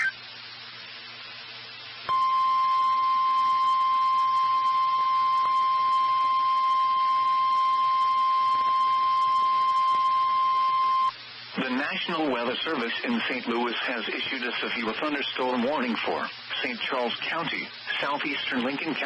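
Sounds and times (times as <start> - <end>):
faint hiss: 11.1 - 19.0.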